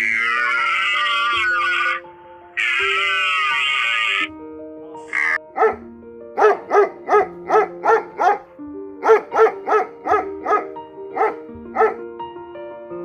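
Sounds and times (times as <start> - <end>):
background music: 0.0 - 13.0
dog barking: 5.1 - 12.0.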